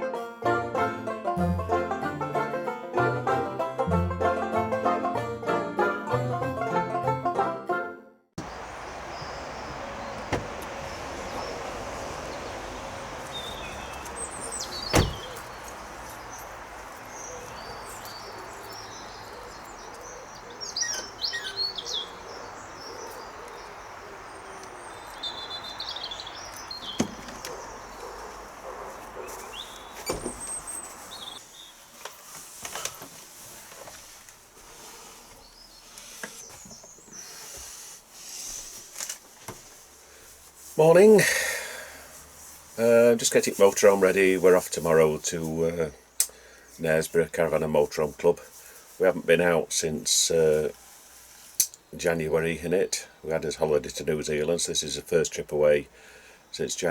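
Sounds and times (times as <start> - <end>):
birds chirping: 8.4 - 32.3, 34.7 - 37.8.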